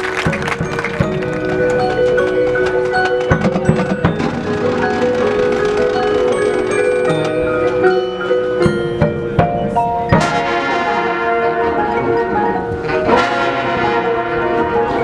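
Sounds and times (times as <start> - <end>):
mallet percussion: 0.0 - 15.0
marching band playing: 0.0 - 15.0
brass playing loudly: 10.1 - 15.0.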